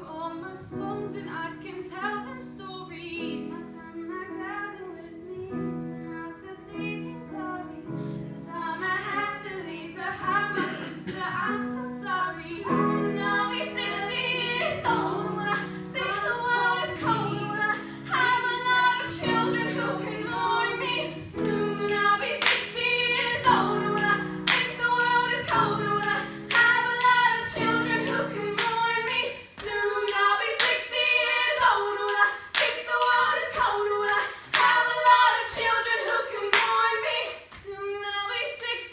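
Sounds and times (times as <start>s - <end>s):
people singing live: 8.5s - 38.9s.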